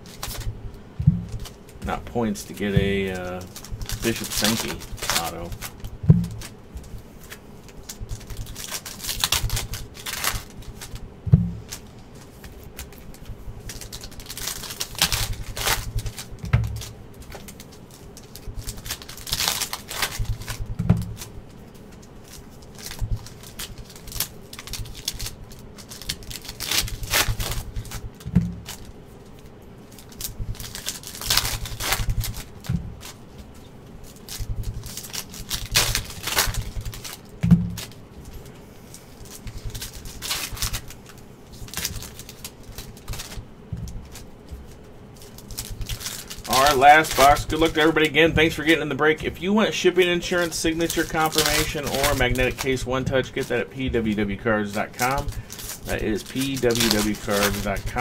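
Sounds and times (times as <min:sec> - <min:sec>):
cards shuffling: 0:00.0 - 0:58.0
wrapper rustling: 0:00.0 - 0:58.0
soft thumps: 0:00.4 - 0:01.9, 0:05.9 - 0:07.1, 0:10.6 - 0:11.9, 0:28.0 - 0:28.7, 0:32.0 - 0:33.0, 0:36.6 - 0:37.9.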